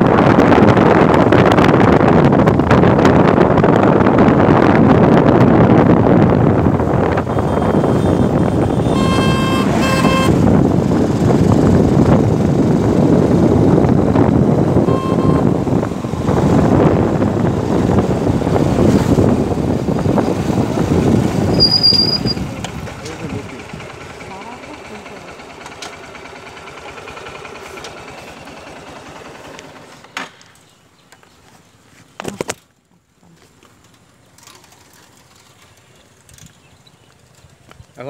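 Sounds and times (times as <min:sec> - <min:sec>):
wind noise: 0:00.0 - 0:24.0
motorcycle engine running: 0:00.0 - 0:30.2
horn beeping: 0:07.1 - 0:10.5, 0:14.8 - 0:16.5.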